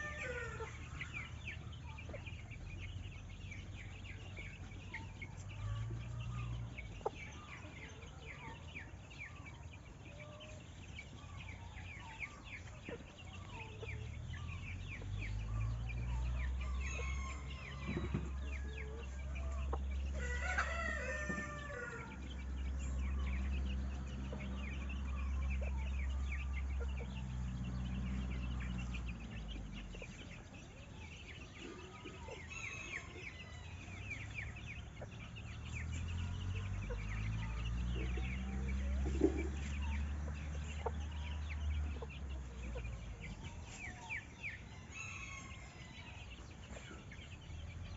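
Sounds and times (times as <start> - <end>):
rooster crowing: 0.0 - 1.2, 15.6 - 22.5, 32.1 - 34.2, 44.6 - 46.4
chickens: 0.0 - 47.9
small birds chirping: 0.0 - 47.9.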